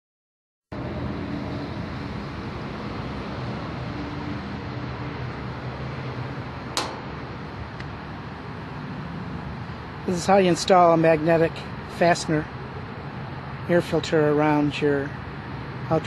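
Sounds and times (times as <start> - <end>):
air conditioning unit humming: 0.8 - 16.0
sharp click: 6.8 - 7.1.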